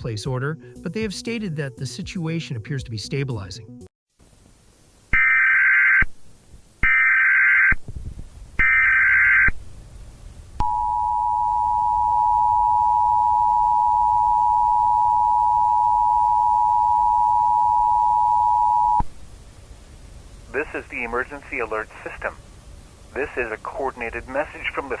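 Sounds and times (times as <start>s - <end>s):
two-tone alarm: 5.2s - 6.1s, 6.8s - 7.8s, 8.6s - 9.5s, 10.6s - 19.0s.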